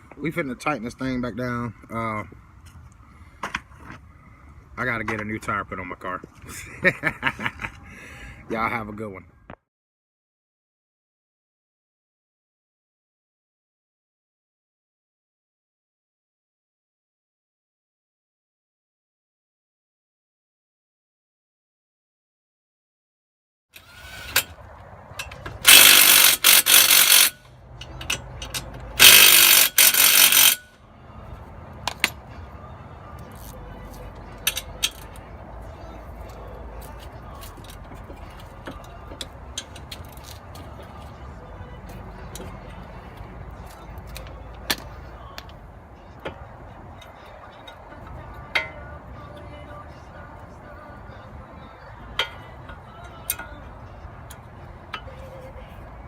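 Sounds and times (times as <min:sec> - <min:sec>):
ratchet wrench clicking: 0:23.8 - 0:24.6, 0:25.2 - 0:30.8, 0:33.3 - 0:33.6, 0:34.4 - 0:35.2, 0:37.5 - 0:40.6
metal clicks and clanks: 0:23.8 - 0:30.7.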